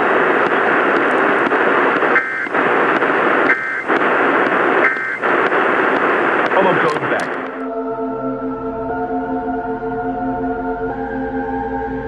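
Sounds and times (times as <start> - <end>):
two-tone data bursts: 0.0 - 7.6
radio static hiss: 0.0 - 7.7.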